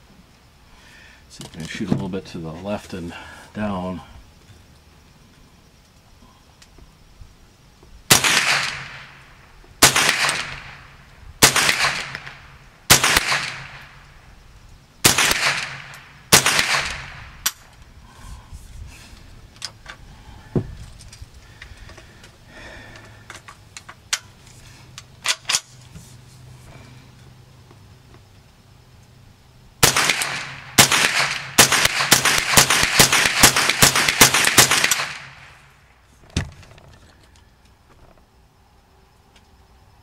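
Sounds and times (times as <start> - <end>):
rifle shots: 8.1 - 14.0, 15.0 - 17.6, 29.8 - 35.7
faint sharp cracks: 9.8 - 14.0, 15.1 - 17.8, 29.8 - 35.8.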